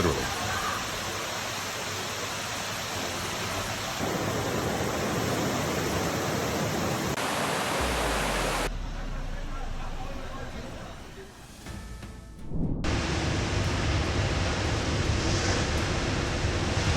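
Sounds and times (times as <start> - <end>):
floodwater rushing: 0.0 - 8.7.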